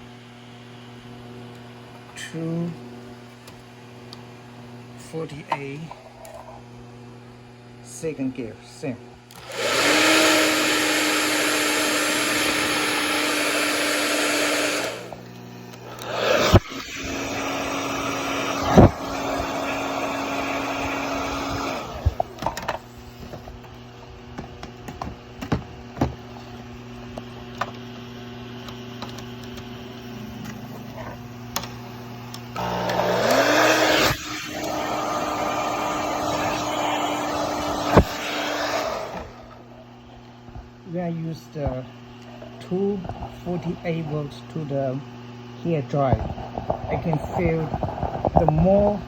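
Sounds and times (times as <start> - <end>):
electrical hum: 0.0 - 49.0
fan motor whine: 0.0 - 49.0
hair dryer blowing: 9.3 - 27.8, 28.4 - 40.7.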